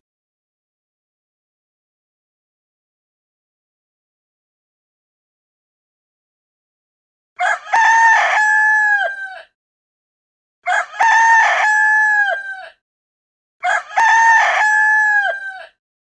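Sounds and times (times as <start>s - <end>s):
rooster crowing: 7.4s - 9.6s, 10.7s - 12.8s, 13.6s - 15.8s.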